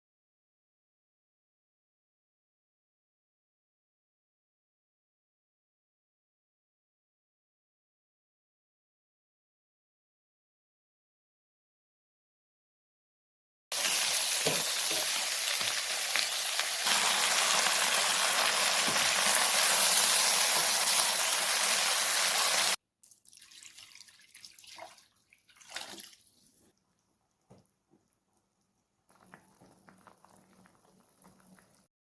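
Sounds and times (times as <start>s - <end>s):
water running from tap: 13.7s - 26.0s.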